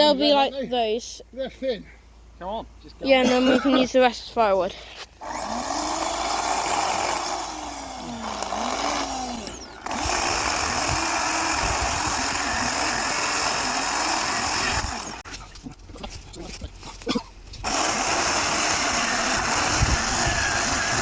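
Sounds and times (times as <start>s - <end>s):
electric chainsaw cutting wood: 5.2s - 15.2s, 17.6s - 21.0s.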